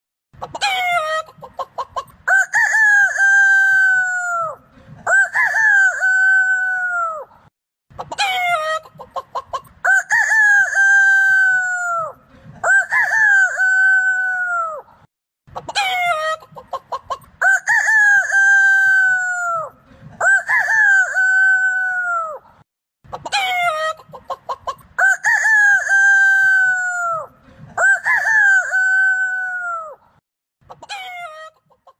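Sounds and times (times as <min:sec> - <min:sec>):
rooster crowing calls: 0:02.3 - 0:07.3, 0:09.8 - 0:14.8, 0:17.4 - 0:22.4, 0:25.0 - 0:30.0.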